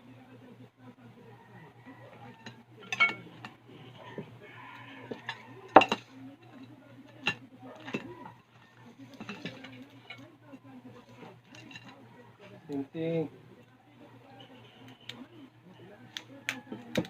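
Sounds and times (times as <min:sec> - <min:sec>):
plates and cutlery clinking: 0:02.1 - 0:10.3, 0:11.0 - 0:12.0.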